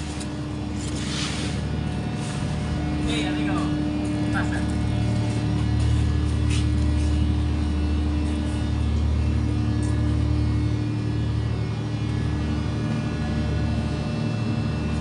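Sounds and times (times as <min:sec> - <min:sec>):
heavy machinery engine droning: 0:00.0 - 0:15.0.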